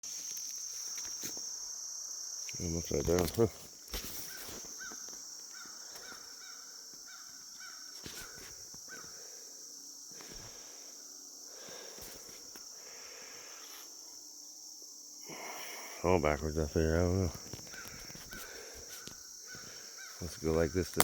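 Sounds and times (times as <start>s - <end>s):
high insect drone: 0.0s - 21.0s
crows cawing: 4.2s - 9.3s, 17.6s - 20.3s.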